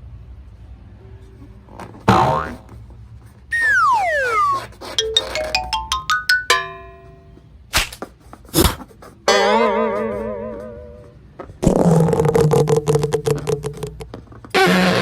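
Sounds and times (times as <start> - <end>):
plucked chord: 5.0 - 7.3.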